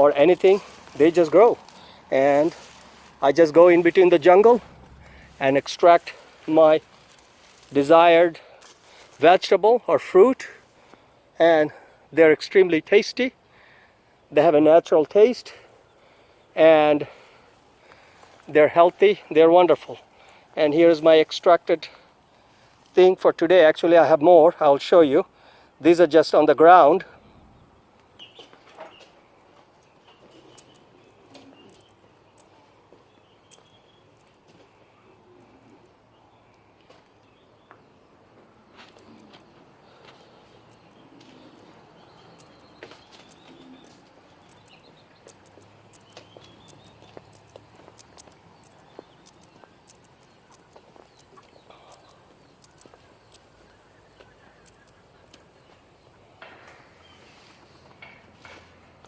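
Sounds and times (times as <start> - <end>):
steady high hiss: 0.0 - 34.0
sharp clicks and ticks: 41.5 - 57.0.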